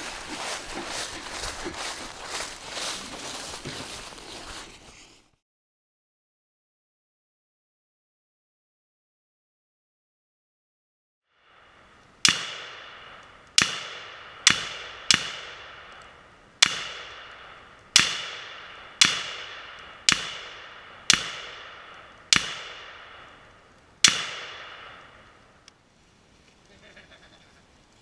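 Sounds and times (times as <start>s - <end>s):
rifle shots with echo: 12.2s - 25.4s.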